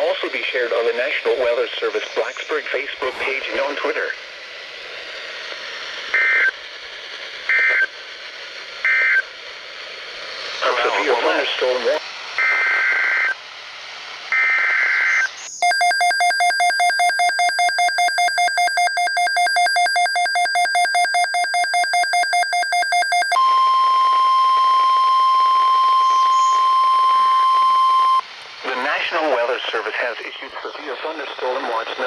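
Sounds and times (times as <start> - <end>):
steady warning alarm tone: 15.6 - 28.8.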